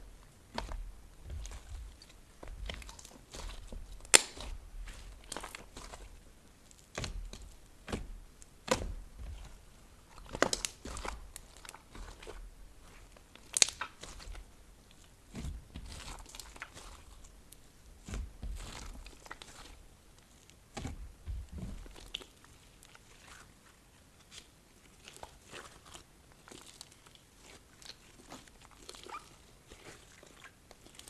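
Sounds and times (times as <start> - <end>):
slime squished by hand: 0.5 - 6.2, 6.8 - 17.3.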